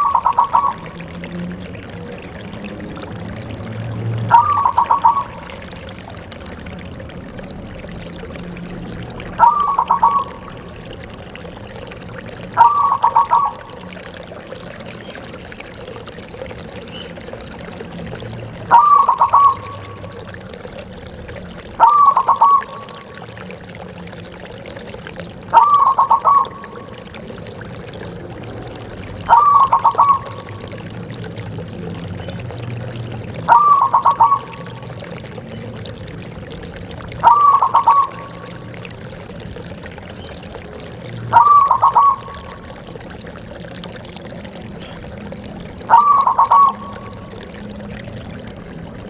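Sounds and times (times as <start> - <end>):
dove cooing: 4.3 - 6.1, 9.2 - 10.6, 12.5 - 14.6, 18.6 - 20.6, 21.6 - 23.2, 25.5 - 30.8, 33.4 - 35.0, 37.2 - 38.6, 40.9 - 44.3, 45.8 - 47.5.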